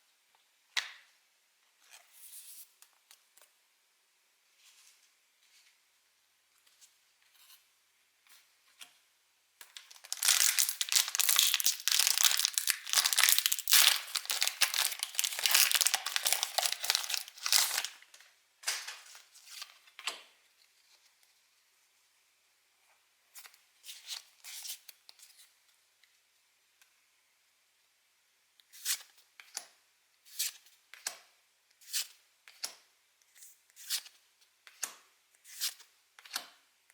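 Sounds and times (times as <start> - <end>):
foil wrapper tearing and crinkling: 9.8 - 18.0.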